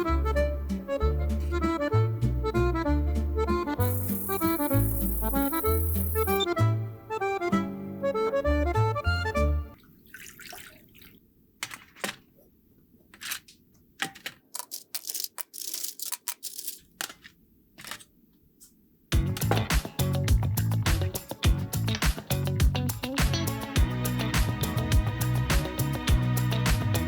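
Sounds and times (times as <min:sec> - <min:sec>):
accordion background music: 0:00.0 - 0:09.8, 0:19.2 - 0:27.0
hands clicking and tapping: 0:19.2 - 0:27.0.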